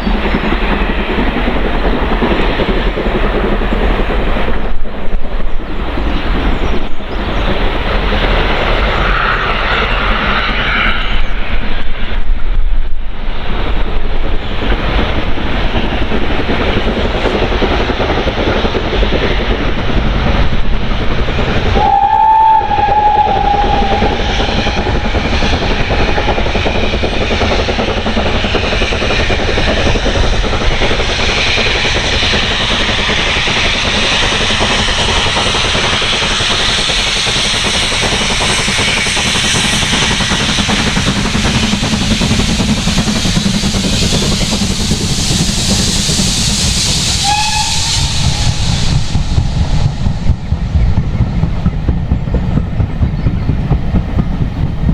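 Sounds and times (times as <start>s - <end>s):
steam train passing: 0.0s - 54.9s
steam locomotive whistle: 21.6s - 26.6s, 44.0s - 49.5s.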